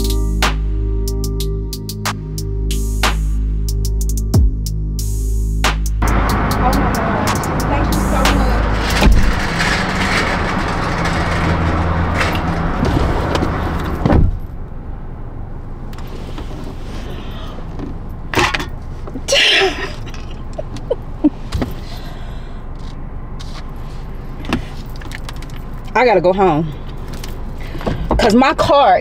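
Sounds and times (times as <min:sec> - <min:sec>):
car door thump: 0:09.0 - 0:09.4, 0:14.0 - 0:14.4.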